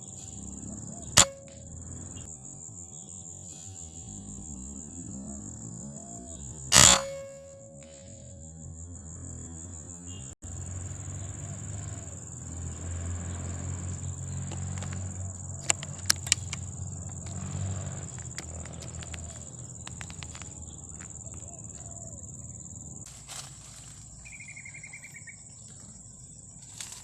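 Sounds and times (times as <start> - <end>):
insects chorus: 0.0 - 27.0
sharp clicks: 14.5 - 21.1.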